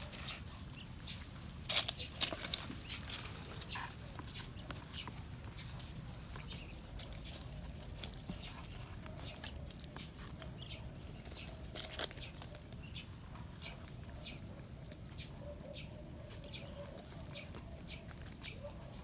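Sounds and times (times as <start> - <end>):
puppies chewing kibble: 0.0 - 19.0.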